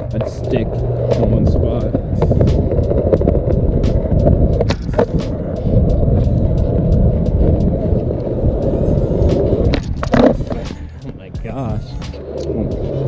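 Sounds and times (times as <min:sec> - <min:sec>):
skateboard rolling on concrete: 0:00.0 - 0:13.0.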